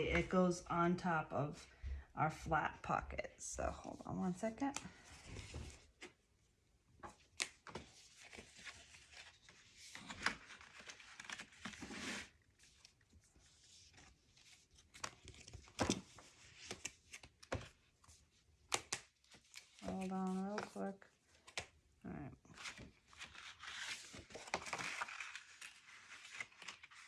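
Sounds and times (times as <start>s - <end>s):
paper rustling: 7.0s - 21.8s, 22.5s - 27.0s.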